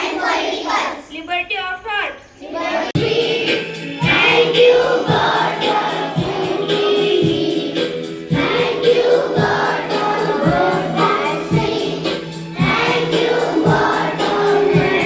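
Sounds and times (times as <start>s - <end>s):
children singing in chorus: 0.0s - 1.0s, 2.4s - 15.0s
musical accompaniment with beat: 3.0s - 15.0s.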